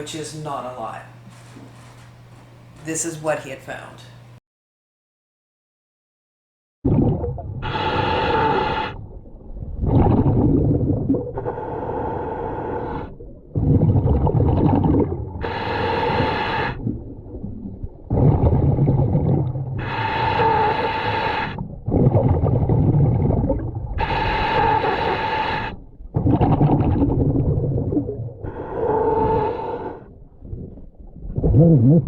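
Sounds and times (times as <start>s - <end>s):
exhaled bubbles rumbling: 6.8s - 32.0s
buzzing regulator inhalations: 14.7s - 16.9s, 18.1s - 27.0s.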